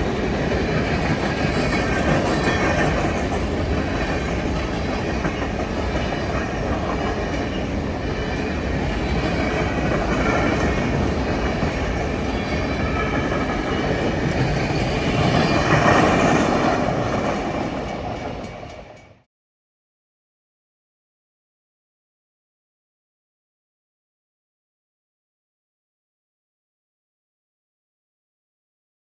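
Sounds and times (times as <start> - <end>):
freight train wheels rumbling: 0.0 - 19.3.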